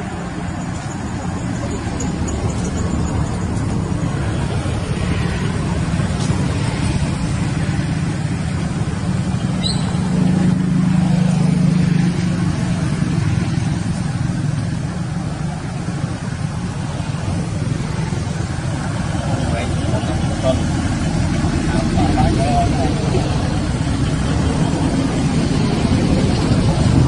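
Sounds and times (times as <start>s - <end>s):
low motor rumble: 0.0s - 27.0s
short high chirp: 9.6s - 10.1s.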